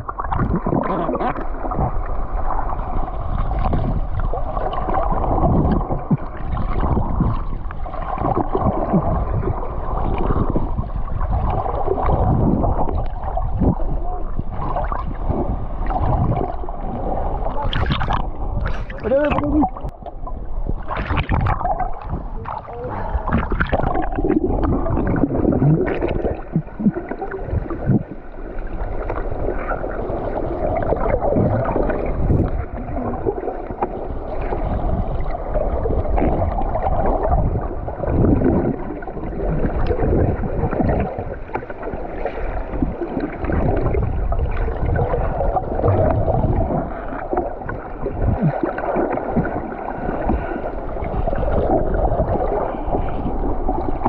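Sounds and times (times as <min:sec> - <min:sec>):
water sloshing against boat hull: 0:03.4 - 0:30.0.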